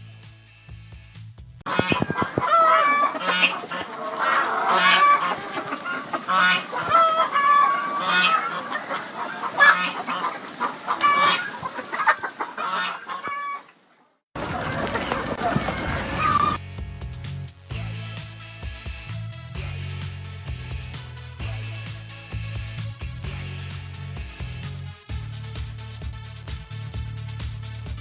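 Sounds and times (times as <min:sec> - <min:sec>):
poultry squawking: 0:01.7 - 0:13.7, 0:14.7 - 0:16.6.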